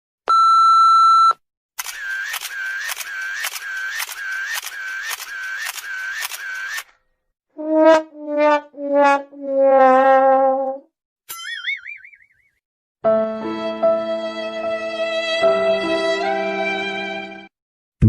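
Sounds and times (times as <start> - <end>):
sad trombone sound effect: 7.6 - 10.8
warbling cartoon tone: 11.3 - 12.4.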